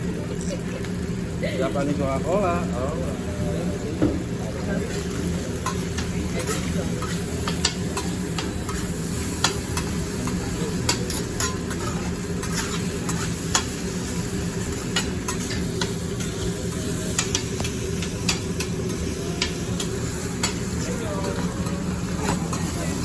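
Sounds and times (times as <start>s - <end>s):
food sizzling on a griddle: 0.0s - 23.0s
metal spatula clicks on griddle: 5.6s - 8.8s, 9.4s - 11.8s, 12.4s - 13.8s, 17.1s - 18.8s, 19.4s - 20.7s.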